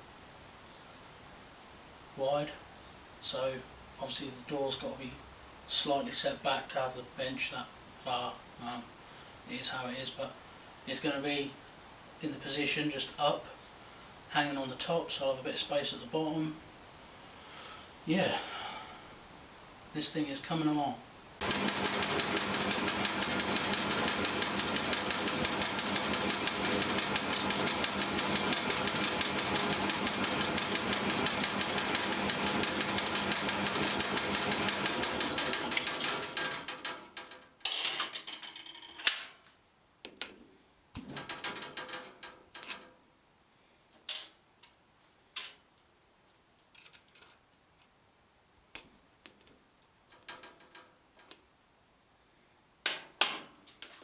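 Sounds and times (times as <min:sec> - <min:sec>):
workshop machine rattling hum: 0:21.4 - 0:37.4.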